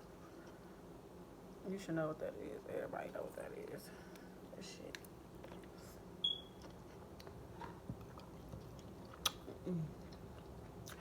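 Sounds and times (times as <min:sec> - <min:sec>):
chewing and lip-smacking: 0:06.6 - 0:11.0.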